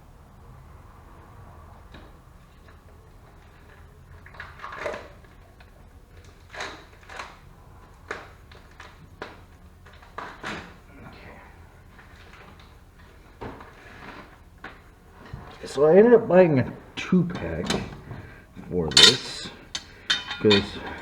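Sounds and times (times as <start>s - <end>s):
low steady hum: 15.7s - 21.0s
clunks and scrapes of tools: 17.4s - 21.0s.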